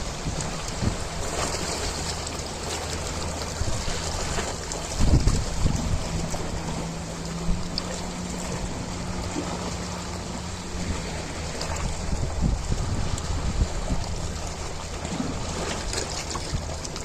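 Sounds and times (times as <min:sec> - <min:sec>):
ocean waves washing: 0:00.0 - 0:17.0
low rumbling thumps: 0:03.2 - 0:15.6.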